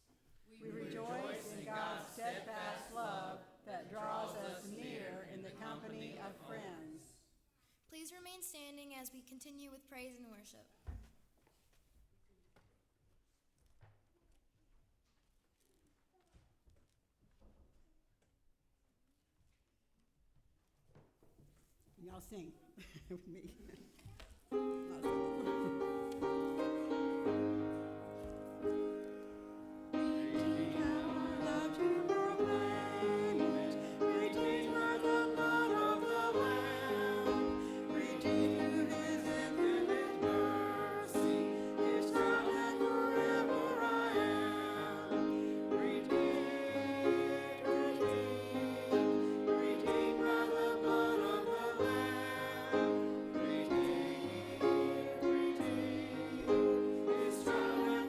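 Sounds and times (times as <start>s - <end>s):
voices singing: 0.5s - 7.2s, 24.6s - 58.0s.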